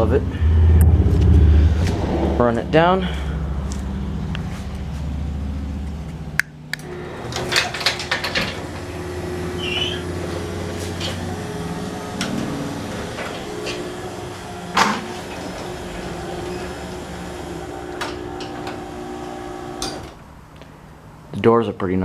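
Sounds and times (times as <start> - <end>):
garage door motor humming: 0.4 - 20.5
garage door clicks and rattles: 6.8 - 9.1.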